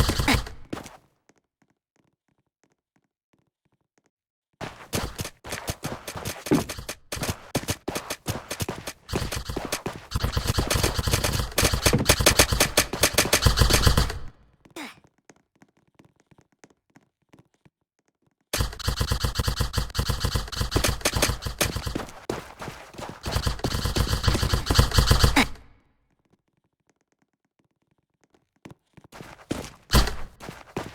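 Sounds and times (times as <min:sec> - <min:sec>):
airsoft gun firing: 0:00.0 - 0:00.8, 0:05.0 - 0:14.4, 0:18.6 - 0:22.4, 0:23.0 - 0:25.7, 0:29.9 - 0:30.9.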